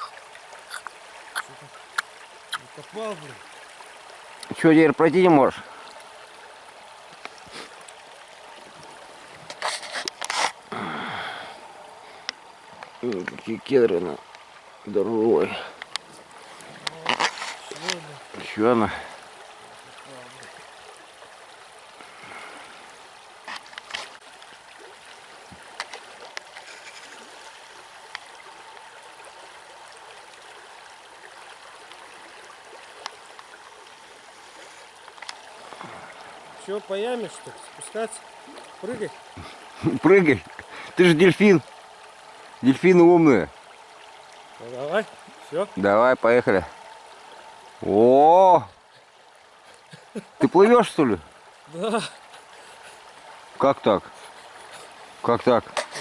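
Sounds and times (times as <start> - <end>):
river running: 0.0 - 56.0.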